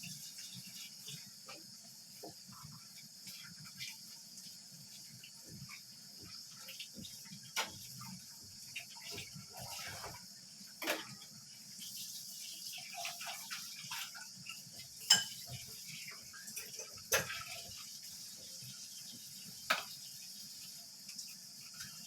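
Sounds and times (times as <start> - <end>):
utensils clinking on dishes: 14.9 - 17.7.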